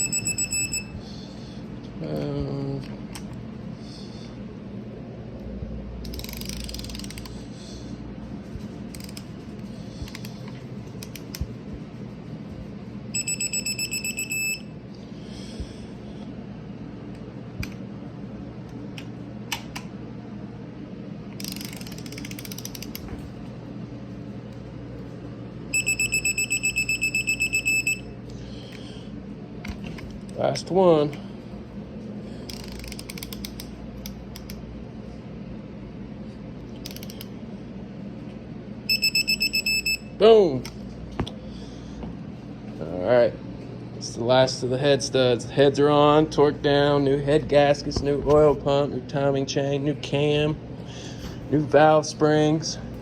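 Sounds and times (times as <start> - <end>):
fast pulsing high beep: 0.0 - 1.0, 13.2 - 14.7, 25.7 - 28.1, 38.9 - 40.1.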